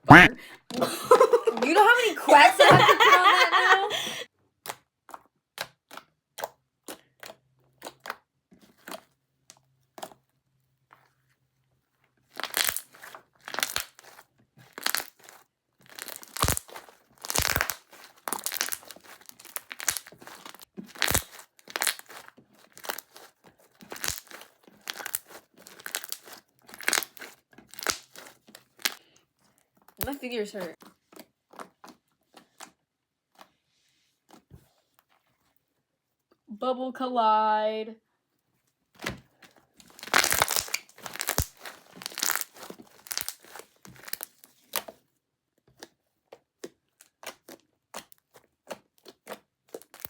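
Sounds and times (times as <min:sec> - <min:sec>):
slime squeezed popping and crackling: 0:12.3 - 0:29.0, 0:39.9 - 0:44.9, 0:47.0 - 0:50.0.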